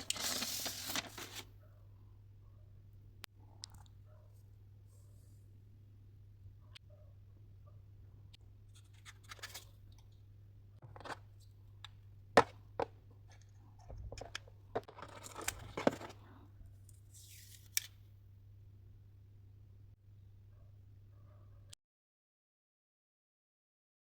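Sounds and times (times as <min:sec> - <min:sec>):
packaging rustling and tearing: 0:00.0 - 0:01.5.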